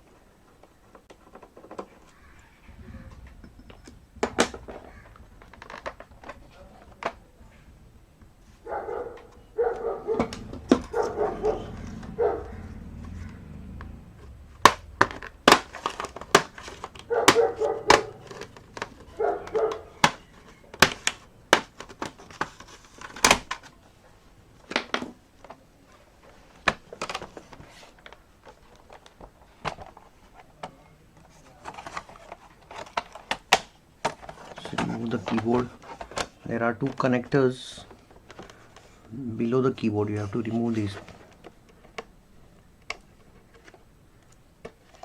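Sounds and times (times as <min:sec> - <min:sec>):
dog barking: 0:08.6 - 0:13.4, 0:17.0 - 0:18.3, 0:19.1 - 0:20.0.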